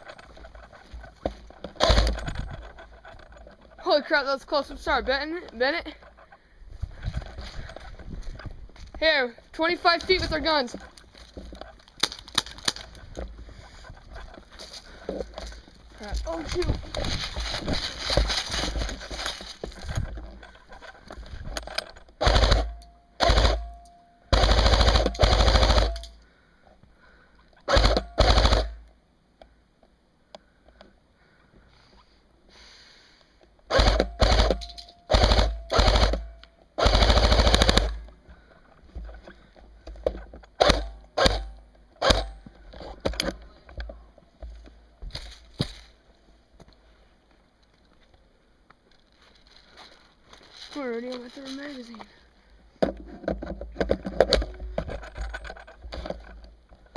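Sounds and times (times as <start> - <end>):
airsoft rifle full auto bursts: 22.2 - 26.2, 27.7 - 28.8, 33.7 - 38.0.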